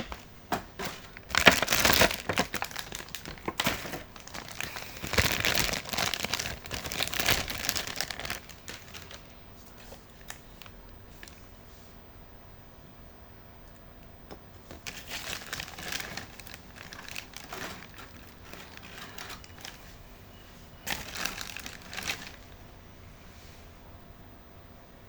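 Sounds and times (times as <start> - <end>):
packaging crinkling: 0.0 - 11.4, 14.6 - 22.8.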